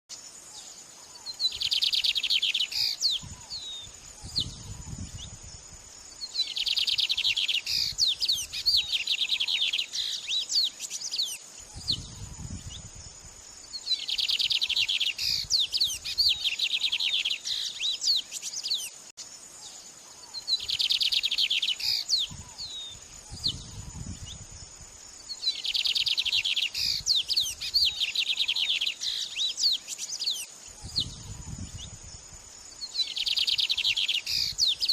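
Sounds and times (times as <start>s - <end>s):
songbird trilling and whistling: 6.3s - 12.8s, 13.8s - 18.9s, 20.5s - 24.4s, 25.4s - 31.9s, 32.9s - 34.9s.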